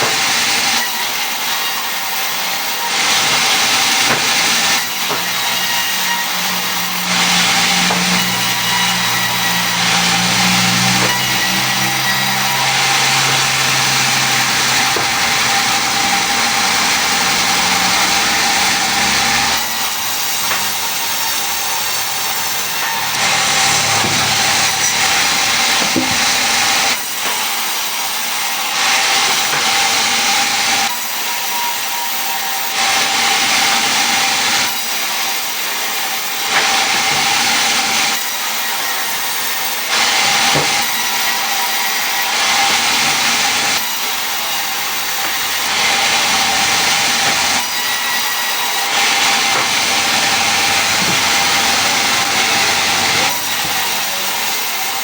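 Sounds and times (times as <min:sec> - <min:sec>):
power tool cutting wood: 0:00.0 - 0:55.0
motor hum: 0:06.9 - 0:26.9.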